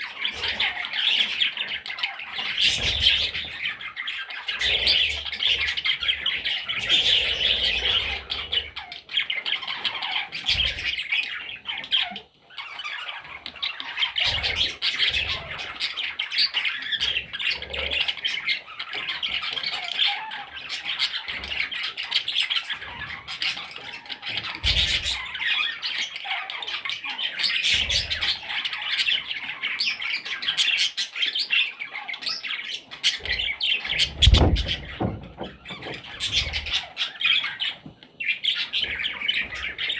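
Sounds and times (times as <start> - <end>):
baby budgerigars chattering: 0.0 - 39.9
soft low thumps: 34.0 - 36.7.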